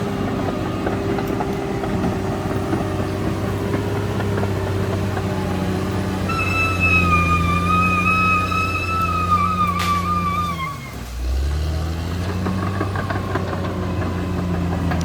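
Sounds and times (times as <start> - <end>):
bulldozer diesel engine running: 0.0 - 15.0
high wavering tone: 6.3 - 11.0.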